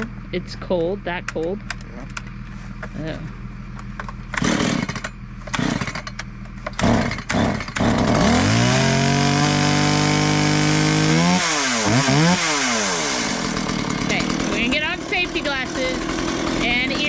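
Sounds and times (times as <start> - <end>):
chainsaw being pull-started: 4.3 - 17.0.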